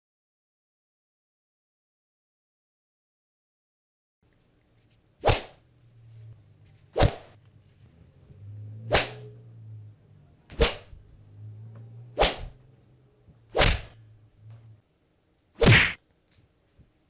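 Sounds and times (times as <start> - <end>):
faint low hum: 4.2 - 17.0
punch and kick hits: 7.0 - 7.4, 10.6 - 10.9, 13.6 - 14.0, 15.6 - 16.0.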